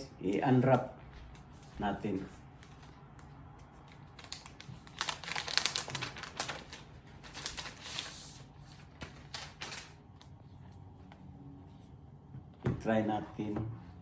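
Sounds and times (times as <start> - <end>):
packaging crinkling and rustling: 2.6 - 10.1.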